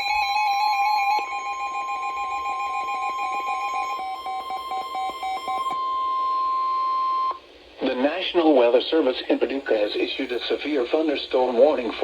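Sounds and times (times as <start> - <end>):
steady high alarm tone: 0.0 - 7.4.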